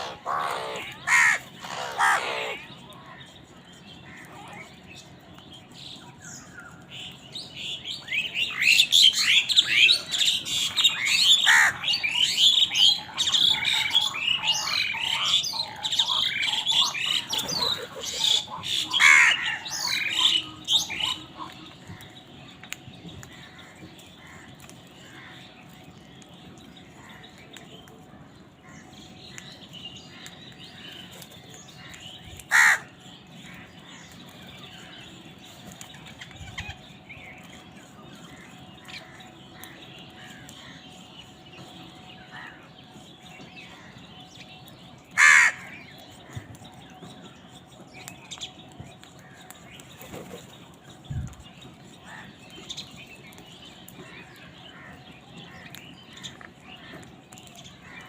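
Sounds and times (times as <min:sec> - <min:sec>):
crows cawing: 0:00.0 - 0:02.6, 0:10.9 - 0:12.3, 0:13.0 - 0:22.2, 0:23.3 - 0:25.6, 0:31.8 - 0:34.0, 0:42.2 - 0:42.7, 0:45.1 - 0:46.6, 0:52.0 - 0:52.7
birds twittering: 0:00.0 - 0:58.0.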